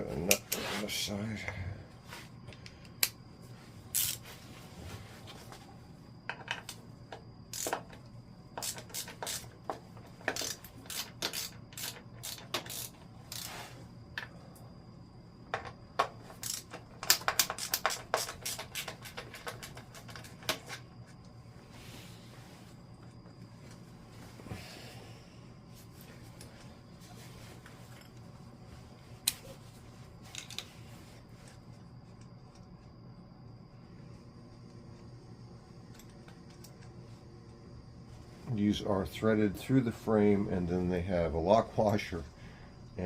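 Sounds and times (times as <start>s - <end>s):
hand tools and metal parts clicking: 3.9s - 4.2s, 6.3s - 13.6s, 15.5s - 21.2s, 30.2s - 30.8s.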